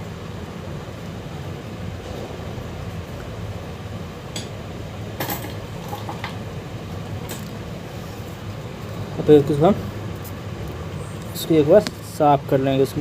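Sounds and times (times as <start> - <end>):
low mechanical hum: 0.0 - 13.0.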